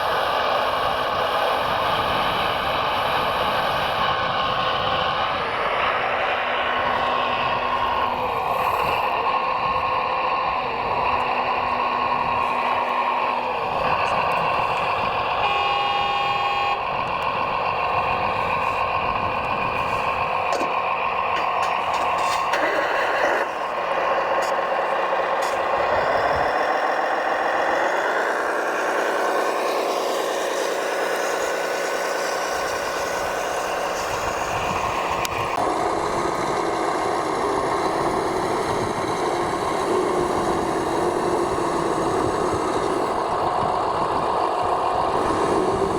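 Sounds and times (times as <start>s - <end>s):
motor whine rising in pitch: 2.0s - 45.9s.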